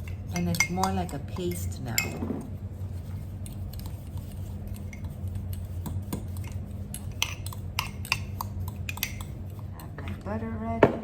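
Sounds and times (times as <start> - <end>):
spoon clinking against bowl: 0.0 - 2.5, 6.1 - 10.0
steady low hum: 0.0 - 11.0.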